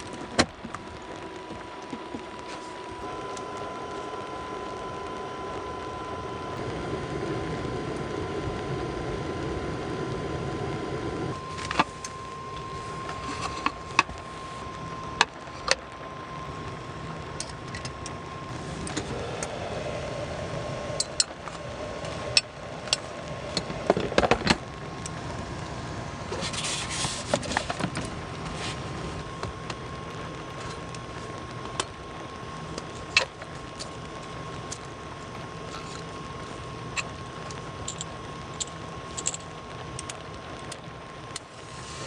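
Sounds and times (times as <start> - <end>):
faint steady tone: 0.9 - 23.8.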